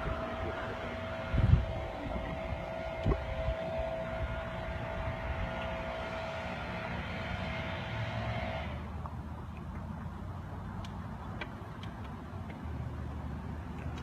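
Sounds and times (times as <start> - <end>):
small motor whining: 0.0 - 8.8.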